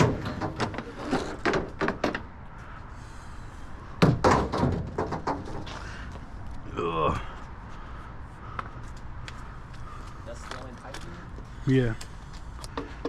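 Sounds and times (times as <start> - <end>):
sharp knocks and clatters: 0.0 - 2.4, 4.0 - 5.8.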